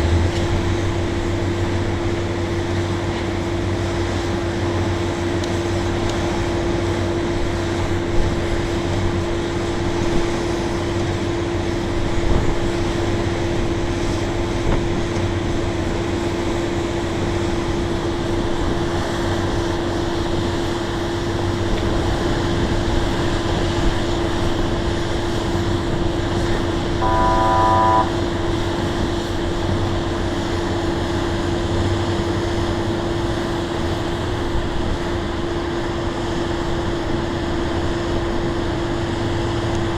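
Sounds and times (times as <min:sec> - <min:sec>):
horn toot: 0:27.0 - 0:28.2
heavy machinery whining and humming: 0:27.0 - 0:28.3.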